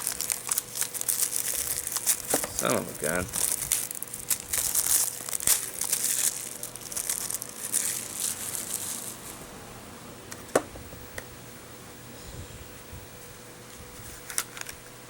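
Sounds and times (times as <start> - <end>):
plastic wrapping crinkling and tearing: 0.0 - 9.5.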